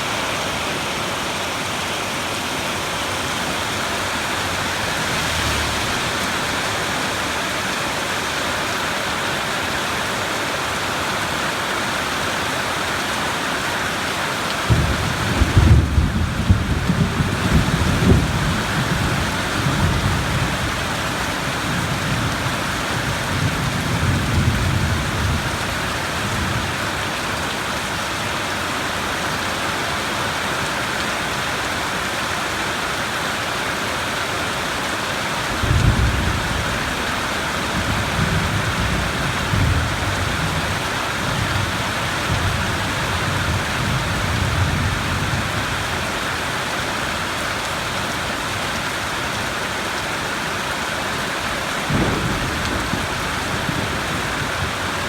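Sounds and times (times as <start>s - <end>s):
heavy rain: 0.0s - 55.0s
thunder rumbling: 14.7s - 26.8s, 35.5s - 45.7s, 51.8s - 55.0s.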